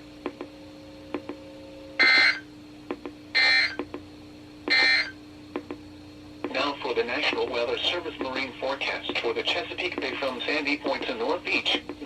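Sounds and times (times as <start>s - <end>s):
faint radio hum: 0.2s - 12.0s
data tone bursts: 2.0s - 2.4s, 3.4s - 3.8s, 4.7s - 5.2s.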